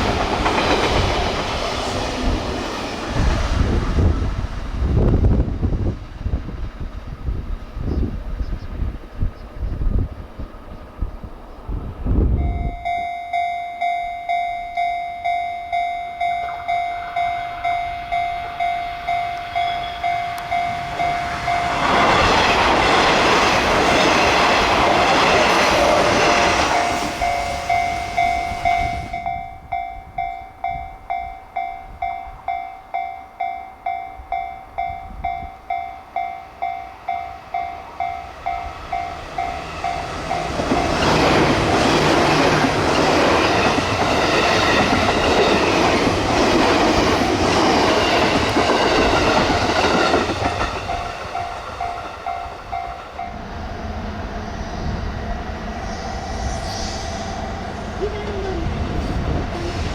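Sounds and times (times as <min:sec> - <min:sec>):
train passing at speed: 0:00.0 - 0:59.9
level-crossing warning bell: 0:12.3 - 0:59.9.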